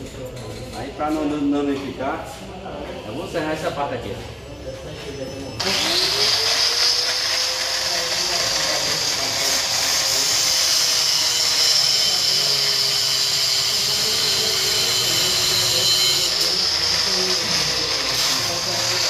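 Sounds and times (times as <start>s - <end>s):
power tool cutting metal: 5.6s - 19.0s.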